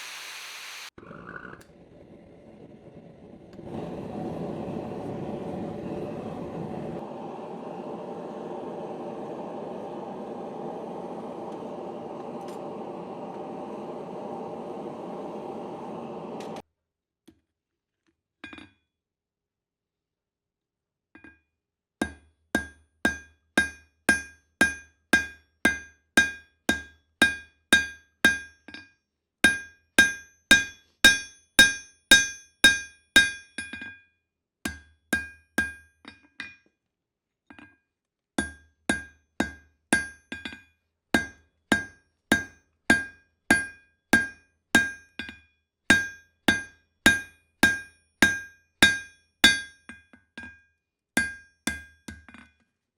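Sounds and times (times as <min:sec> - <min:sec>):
hammer striking steel on anvil: 0:29.5 - 0:33.6, 0:41.2 - 0:49.8, 0:51.2 - 0:51.9.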